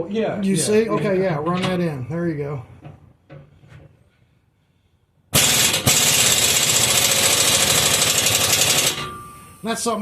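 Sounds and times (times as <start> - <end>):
impact wrench rattling: 5.4 - 9.1.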